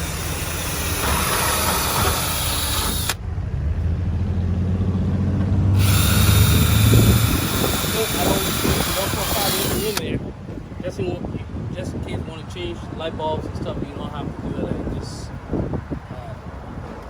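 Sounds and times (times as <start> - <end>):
low motor hum: 0.0 - 10.0.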